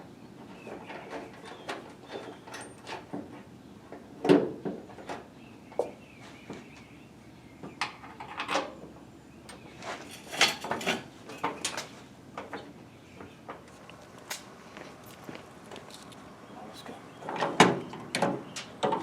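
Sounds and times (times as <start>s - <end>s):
metal parts clinking and rattling: 10.0s - 11.8s.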